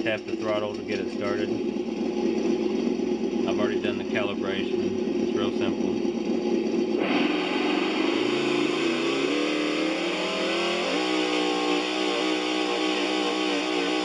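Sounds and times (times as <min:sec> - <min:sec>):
simulated engine revving through speaker: 0:06.8 - 0:14.0.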